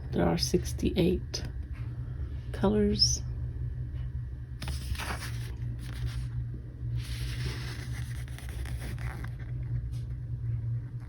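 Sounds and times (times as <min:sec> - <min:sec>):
low background hum: 0:00.0 - 0:11.0
packaging rustling and scraping: 0:07.0 - 0:10.1.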